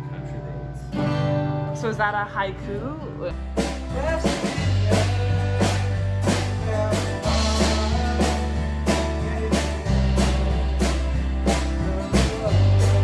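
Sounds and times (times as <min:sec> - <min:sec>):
rock music with drum beat: 0:03.3 - 0:13.0.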